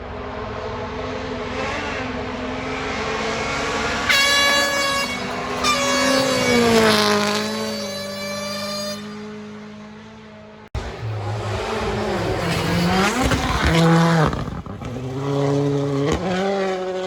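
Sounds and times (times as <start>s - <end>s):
rally car engine passing by: 0.0s - 17.0s.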